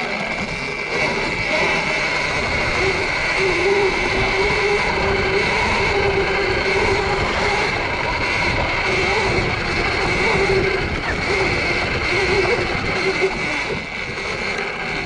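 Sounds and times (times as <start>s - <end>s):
continuous rushing noise: 0.0s - 15.0s
electric motorbike motor whine: 0.0s - 15.0s.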